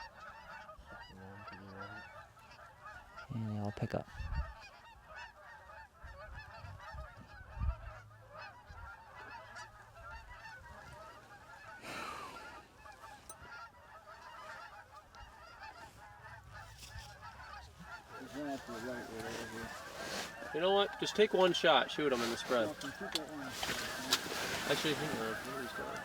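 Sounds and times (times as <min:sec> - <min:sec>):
geese honking: 0:00.0 - 0:26.0.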